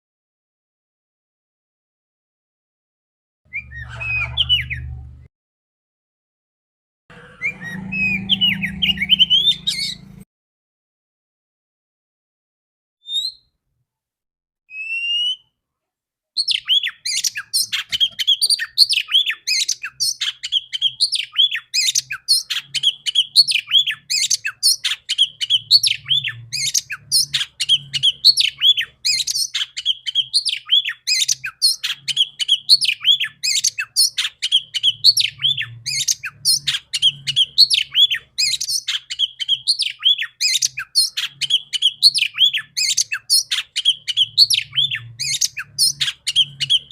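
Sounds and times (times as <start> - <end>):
bird harsh chattering: 3.6 - 4.8, 7.2 - 10.2, 16.6 - 46.9.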